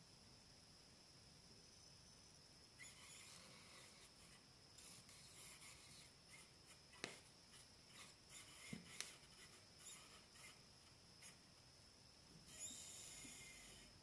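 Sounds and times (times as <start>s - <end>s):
faint scraping and rubbing: 2.8s - 11.5s, 12.4s - 14.0s.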